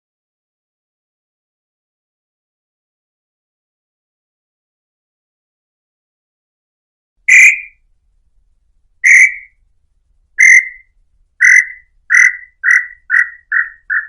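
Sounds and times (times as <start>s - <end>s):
bird whistling short notes: 7.3s - 7.8s, 9.0s - 9.5s, 10.4s - 10.8s, 11.4s - 14.0s.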